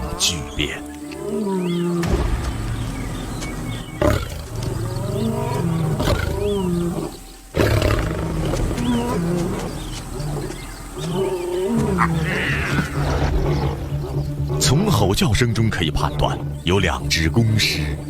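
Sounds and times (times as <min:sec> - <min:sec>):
lions roaring: 0:03.8 - 0:14.8.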